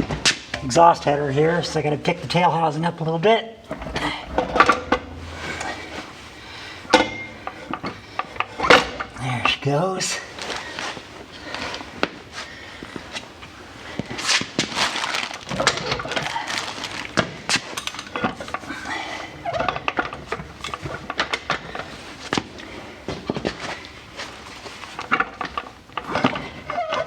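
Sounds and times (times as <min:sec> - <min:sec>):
metal clicks and knocks: 0:03.6 - 0:06.1, 0:06.9 - 0:09.6
metal scraping: 0:03.6 - 0:09.6.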